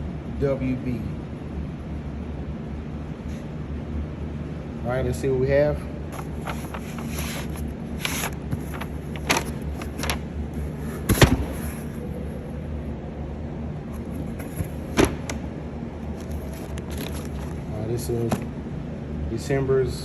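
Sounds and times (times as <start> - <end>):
low hum: 6.0 - 17.8
cardboard scrapes and knocks: 6.2 - 10.2
cardboard box being opened: 6.2 - 12.0, 16.2 - 17.7.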